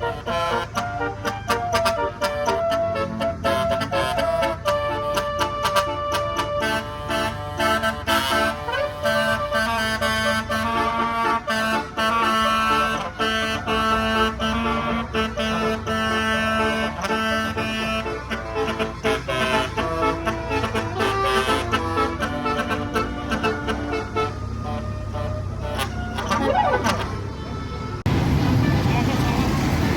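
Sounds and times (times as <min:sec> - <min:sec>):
musical air horn melody: 0:00.0 - 0:28.1
bus engine running: 0:00.0 - 0:29.9.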